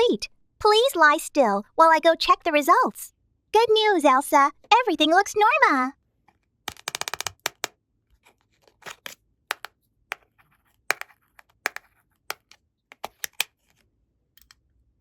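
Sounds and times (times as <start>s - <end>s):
plastic toy pieces clicking: 6.7s - 7.7s, 8.8s - 10.2s, 10.9s - 13.6s.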